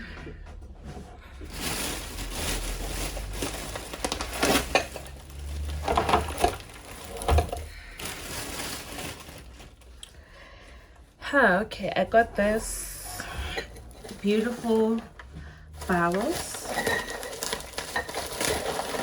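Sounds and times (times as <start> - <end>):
packaging rustling and crinkling: 1.3 - 10.1, 13.5 - 19.0.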